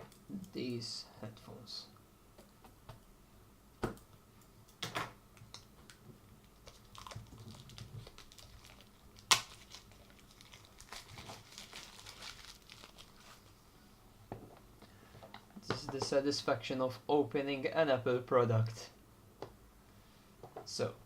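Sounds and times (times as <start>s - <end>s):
wrapping crinkling and tearing: 6.4s - 13.6s.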